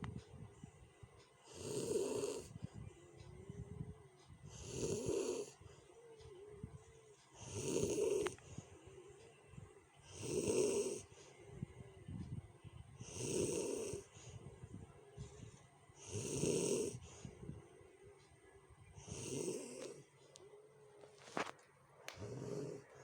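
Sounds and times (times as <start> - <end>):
person snoring rough and loud: 1.5 - 2.6, 4.5 - 5.6, 7.4 - 8.4, 10.1 - 11.2, 13.0 - 14.1, 16.0 - 17.0, 19.0 - 20.0, 22.2 - 23.0.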